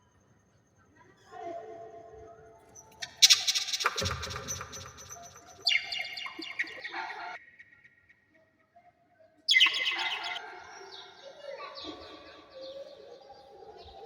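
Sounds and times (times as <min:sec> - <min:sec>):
parrots chirping: 0:02.8 - 0:07.6, 0:09.5 - 0:10.5.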